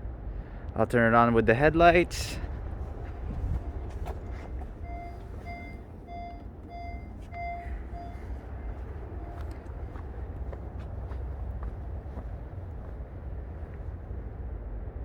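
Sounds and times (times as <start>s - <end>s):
car warning chime beeping: 2.8s - 13.1s.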